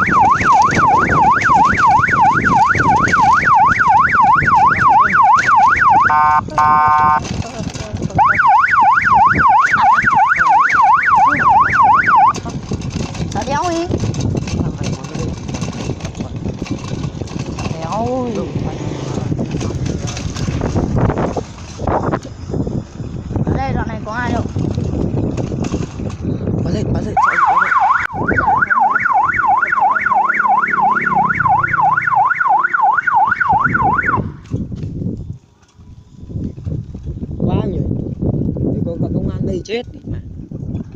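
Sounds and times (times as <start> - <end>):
electronic siren fast yelp: 0.0 - 7.2, 8.2 - 12.4, 27.2 - 34.3.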